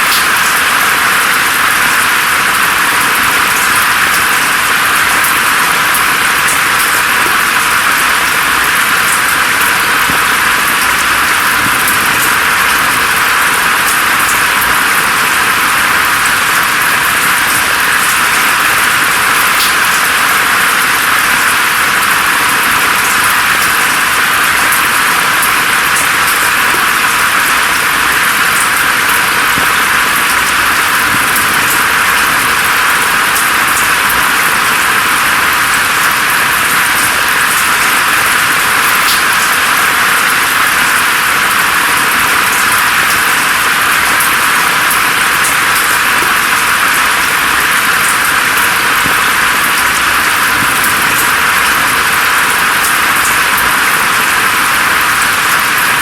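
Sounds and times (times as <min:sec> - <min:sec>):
rain on foliage: 0:00.0 - 0:56.0.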